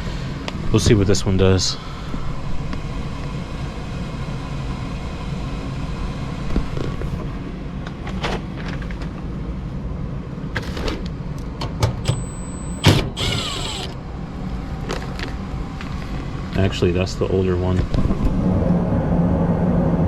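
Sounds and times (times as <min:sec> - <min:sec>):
furnace blower humming: 0:11.8 - 0:14.1
short high-pitched tone: 0:12.1 - 0:13.7.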